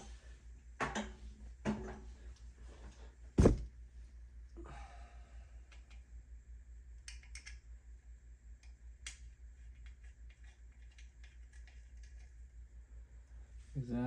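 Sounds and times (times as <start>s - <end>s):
small parts and tools clicking: 7.0s - 7.7s, 8.6s - 12.4s.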